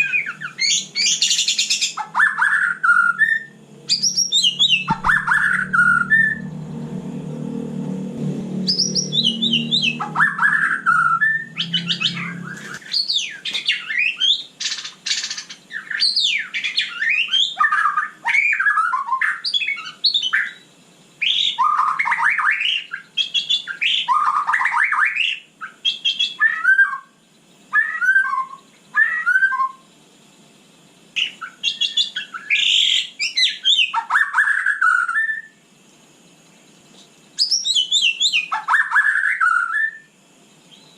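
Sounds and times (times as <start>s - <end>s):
bird singing whistled phrases: 0.0s - 6.5s, 8.7s - 20.6s, 21.2s - 29.9s, 31.2s - 35.6s, 37.4s - 40.1s
low hum: 2.8s - 13.1s.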